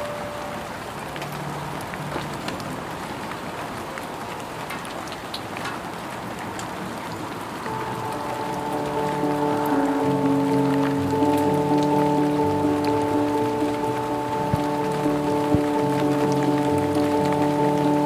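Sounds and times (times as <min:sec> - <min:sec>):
steady rain: 0:00.0 - 0:18.0
soft sustained music notes: 0:07.6 - 0:18.0.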